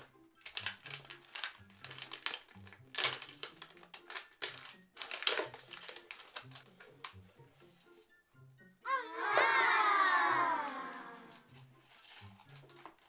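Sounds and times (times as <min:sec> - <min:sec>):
small toys being handled: 0:00.0 - 0:07.3, 0:11.2 - 0:13.0
faint background music: 0:00.0 - 0:13.0
wrappers crinkling: 0:00.4 - 0:06.6, 0:11.8 - 0:13.0.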